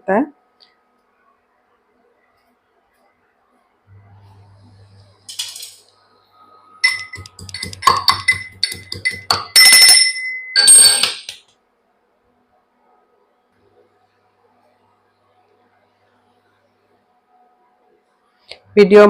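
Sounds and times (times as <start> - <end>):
metal kitchen utensils clinking: 5.3 - 5.9, 6.8 - 11.4.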